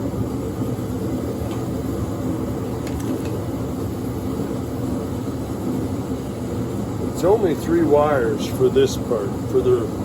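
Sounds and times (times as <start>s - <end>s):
mechanical hum: 0.0s - 10.0s.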